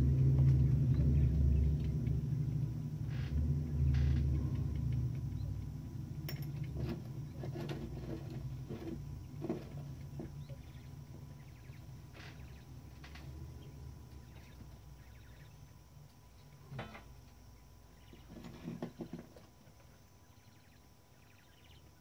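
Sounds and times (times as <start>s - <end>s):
low rumble: 0.0s - 16.4s
small metal parts clicking and tapping: 6.2s - 8.3s.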